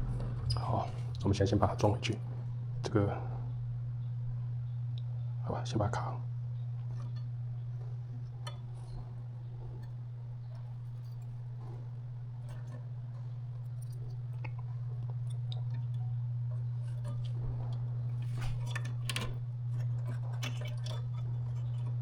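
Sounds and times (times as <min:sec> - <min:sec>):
steady low hum: 0:00.0 - 0:22.0
circuit boards clicking and scraping: 0:06.8 - 0:22.0.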